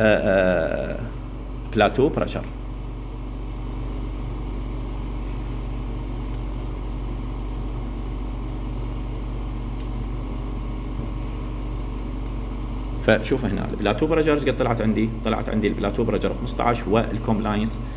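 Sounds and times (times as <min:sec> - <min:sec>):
low machine hum: 0:00.0 - 0:17.9.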